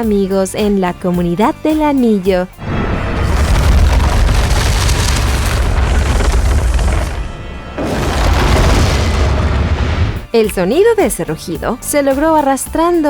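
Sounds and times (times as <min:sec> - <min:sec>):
film score music: 0:01.4 - 0:12.1
deep booming monster roar: 0:02.6 - 0:10.3.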